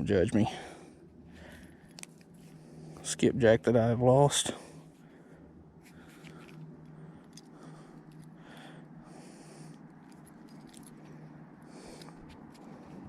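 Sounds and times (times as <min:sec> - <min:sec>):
low steady hum: 0:00.0 - 0:13.0
fishing tackle rustling and clicking: 0:01.5 - 0:02.6, 0:05.8 - 0:08.4, 0:09.7 - 0:13.0.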